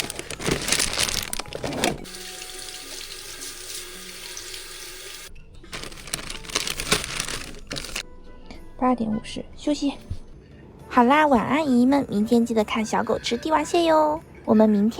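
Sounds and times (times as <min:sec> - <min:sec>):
rattling handling noises: 0:00.0 - 0:02.1, 0:05.7 - 0:08.0
tap water running into sink: 0:02.0 - 0:05.3.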